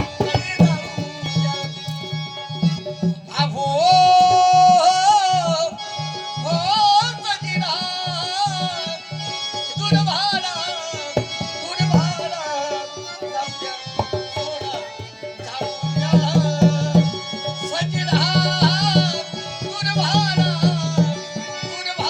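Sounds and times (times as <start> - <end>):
hand drum beat: 0.0 - 4.6.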